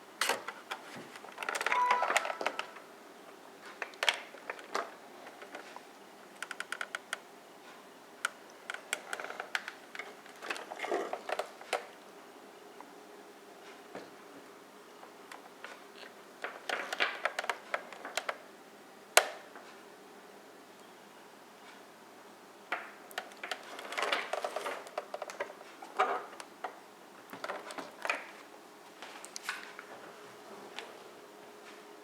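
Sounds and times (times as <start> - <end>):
plastic connectors clicking and rattling: 0.2 - 2.8, 8.2 - 11.8, 16.4 - 18.4, 22.7 - 26.5.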